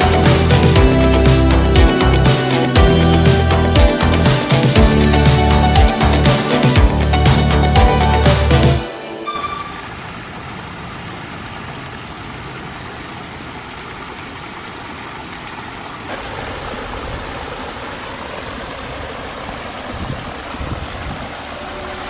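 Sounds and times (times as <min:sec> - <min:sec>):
water splashing down rocks: 0:09.9 - 0:22.0.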